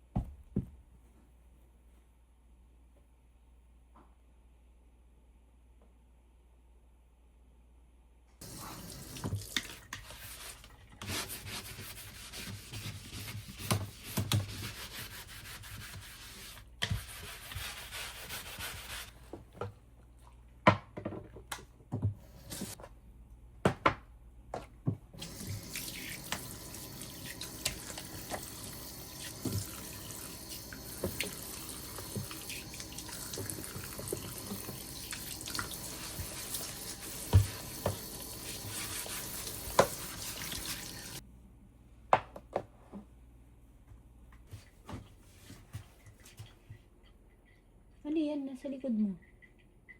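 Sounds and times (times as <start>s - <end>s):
tap running into a sink: 8.4s - 10.1s, 25.2s - 41.2s.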